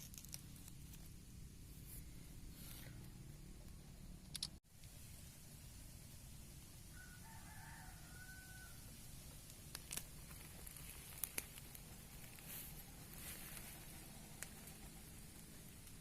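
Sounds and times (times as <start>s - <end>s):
sharp clicks: 4.2s - 4.6s
rooster crowing faintly: 6.9s - 9.0s.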